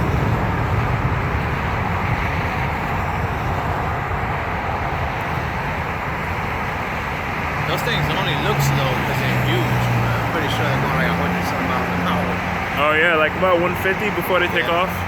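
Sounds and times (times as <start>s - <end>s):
jet engine roar: 0.0s - 15.0s.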